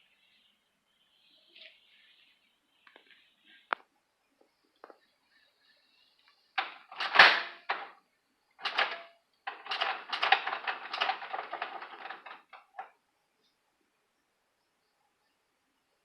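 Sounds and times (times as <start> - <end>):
objects clattering and rattling: 6.6 - 8.0, 8.6 - 12.9.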